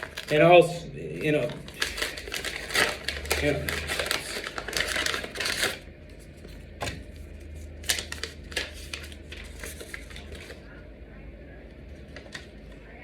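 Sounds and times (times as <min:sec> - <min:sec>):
packaging rustling and crinkling: 0:00.0 - 0:00.5, 0:01.2 - 0:10.6
steady low hum: 0:00.0 - 0:13.0.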